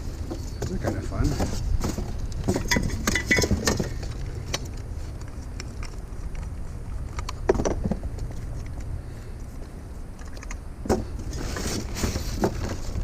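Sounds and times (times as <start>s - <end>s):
steady low rumble: 0.0s - 13.0s
small parts rattling in a box: 0.2s - 4.6s.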